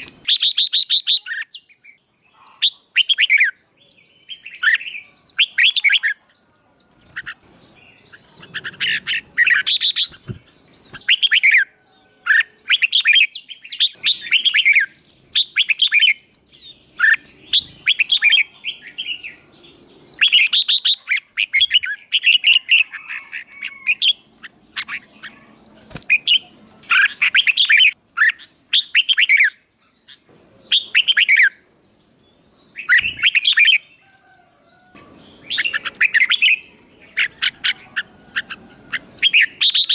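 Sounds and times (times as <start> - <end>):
songbird singing whistled phrases: 0.0 - 24.2, 24.8 - 31.6, 32.3 - 39.9.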